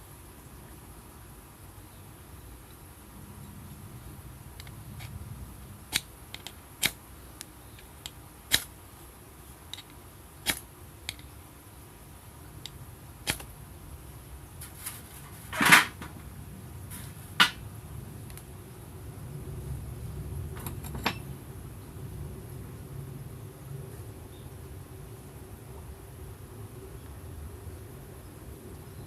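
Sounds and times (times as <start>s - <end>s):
sharp clicks and knocks: 17.4s - 17.6s.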